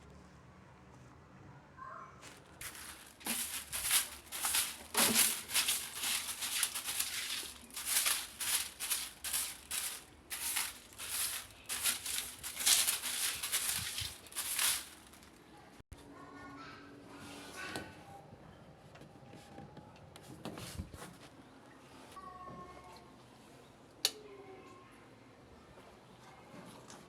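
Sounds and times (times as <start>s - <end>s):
rattling scraping strokes: 2.6s - 15.4s.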